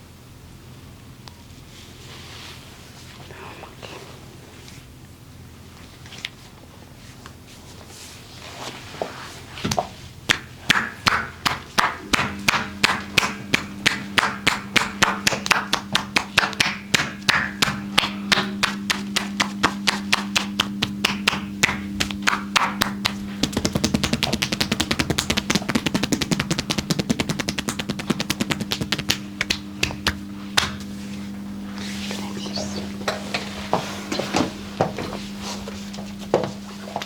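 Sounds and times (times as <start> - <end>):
hands slapping a body: 9.7 - 30.9.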